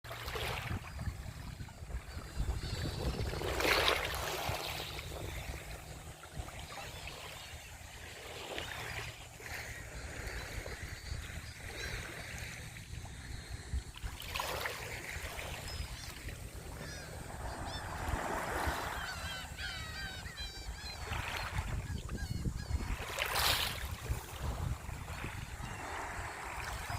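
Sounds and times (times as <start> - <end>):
small waves washing onto shore: 0.1 - 19.4, 22.8 - 26.9
birds chirping: 14.8 - 23.2.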